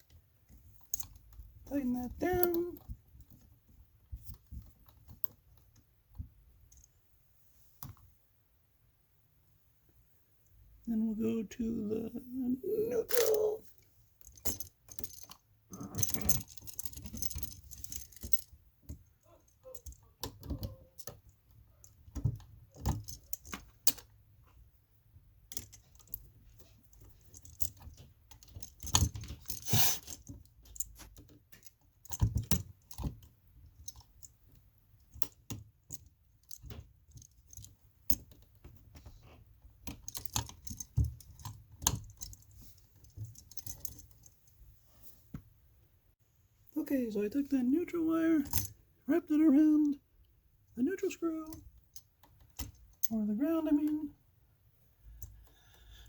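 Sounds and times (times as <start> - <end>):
hand tools clicking and clinking: 12.9 - 13.6, 14.2 - 24.2.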